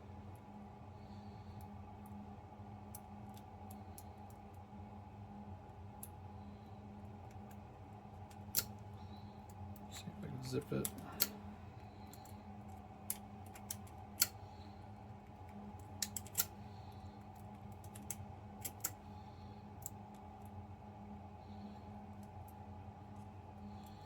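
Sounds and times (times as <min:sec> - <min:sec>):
steady low hum: 0:00.0 - 0:24.0
lock pick clicking in padlock: 0:16.0 - 0:16.5.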